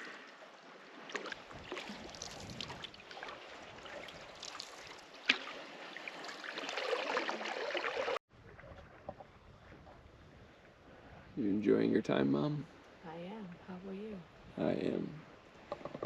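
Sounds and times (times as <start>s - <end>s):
paddle strokes in water: 0.0s - 11.0s.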